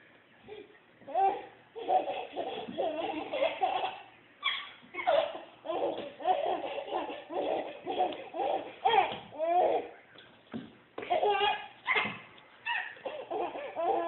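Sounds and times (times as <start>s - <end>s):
baby laughing and giggling: 0.5s - 9.9s, 11.0s - 12.1s, 12.7s - 14.0s.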